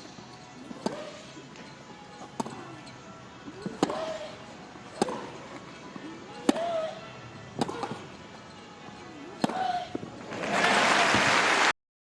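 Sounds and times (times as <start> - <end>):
racquet striking tennis ball: 0.8 - 1.2, 3.5 - 4.3, 4.9 - 5.4, 6.4 - 6.9, 7.6 - 8.0, 9.4 - 9.7.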